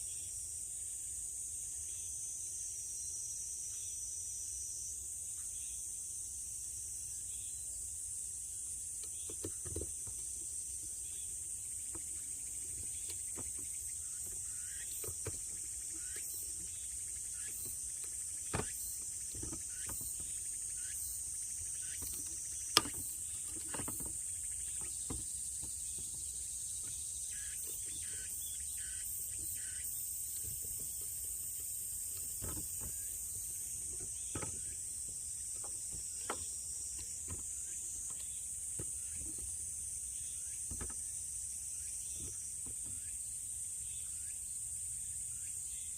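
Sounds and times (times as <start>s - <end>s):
crickets chirping chorus: 0.0s - 45.9s.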